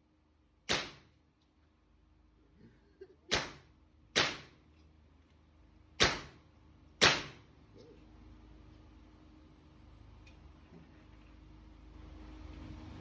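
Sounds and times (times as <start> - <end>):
handgun shots with echo: 0.7 - 1.1, 3.3 - 3.6, 4.2 - 4.6, 6.0 - 6.4, 7.0 - 7.4.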